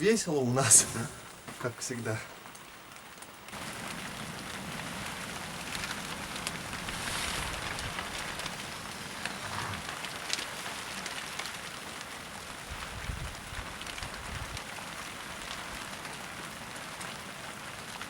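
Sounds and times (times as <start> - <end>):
rain pattering: 0.0 - 18.0
low rumble of wind: 2.3 - 16.6.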